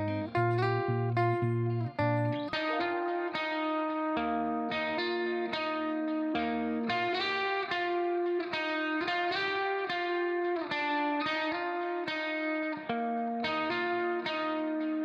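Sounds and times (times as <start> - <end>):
guitar playing chords: 0.0 - 15.0.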